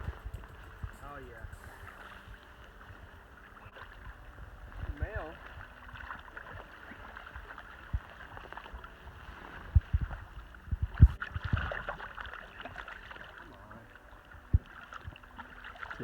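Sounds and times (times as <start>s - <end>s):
low thumps: 0.0s - 2.4s, 9.7s - 11.7s.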